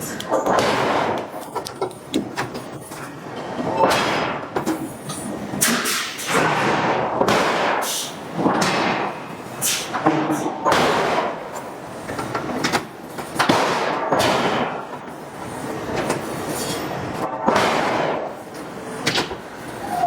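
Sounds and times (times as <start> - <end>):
forging hammer striking steel: 0.0 - 2.4, 17.3 - 18.4.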